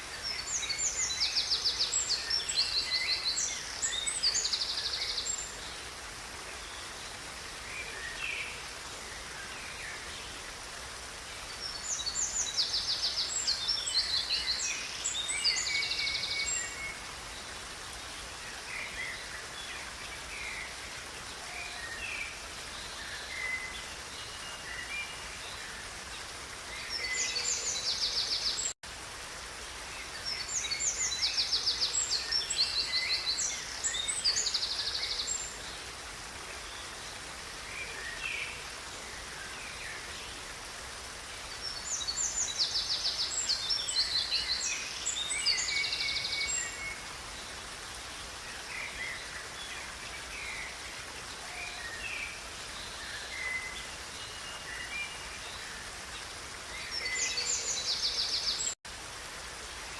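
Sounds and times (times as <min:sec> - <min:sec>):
songbird singing: 0:00.0 - 0:10.6, 0:11.3 - 0:28.8, 0:30.0 - 0:35.8, 0:41.4 - 0:58.8
river water rushing: 0:00.0 - 0:59.9.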